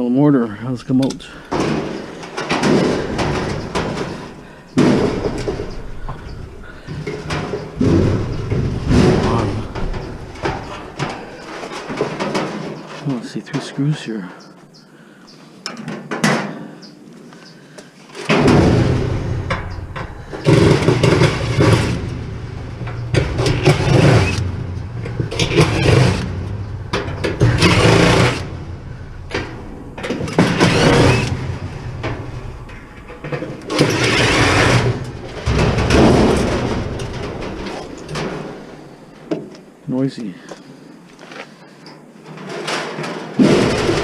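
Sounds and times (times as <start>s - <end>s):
power drill surging: 27.4s - 28.5s.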